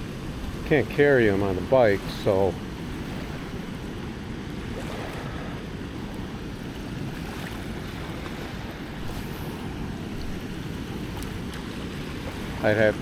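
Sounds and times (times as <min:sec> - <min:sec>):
river rushing: 0:00.0 - 0:13.0
wind on microphone: 0:00.0 - 0:13.0.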